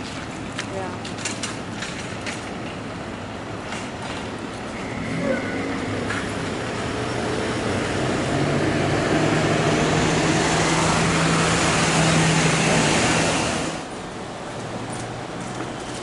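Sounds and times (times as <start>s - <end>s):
large vehicle passing: 4.7s - 14.0s.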